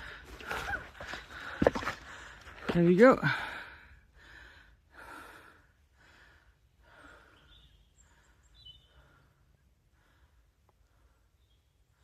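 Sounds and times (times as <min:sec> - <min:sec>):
faint bird chirps: 0:06.9 - 0:09.8, 0:11.2 - 0:12.0.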